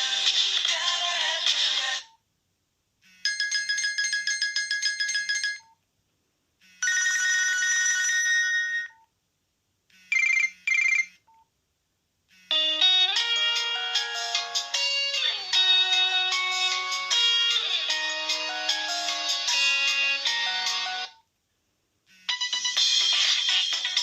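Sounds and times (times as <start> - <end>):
phone chiming tone: 6.6 - 9.0, 12.3 - 21.2
mobile phone trilling ring: 6.7 - 9.0, 10.0 - 11.4.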